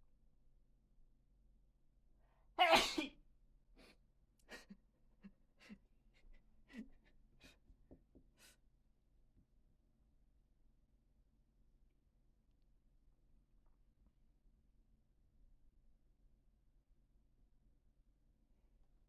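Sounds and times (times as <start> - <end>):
person sneezing: 2.6 - 3.1.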